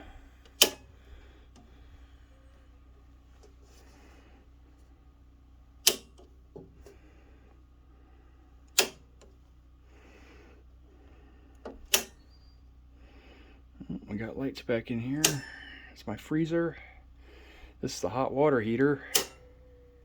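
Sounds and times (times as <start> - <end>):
circuit breakers clicking: 0.0 - 2.1, 5.7 - 7.0, 8.6 - 9.4, 11.5 - 12.4, 15.1 - 15.7, 18.9 - 19.8.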